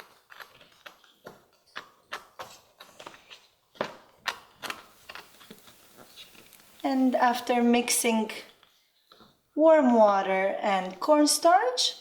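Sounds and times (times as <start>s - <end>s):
stick stirring in plastic cup: 0.0s - 9.4s.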